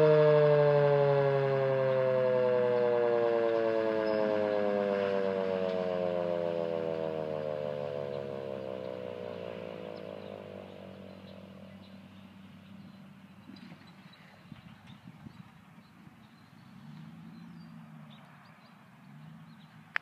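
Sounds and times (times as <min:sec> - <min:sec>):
warning siren winding down: 0:00.0 - 0:12.1.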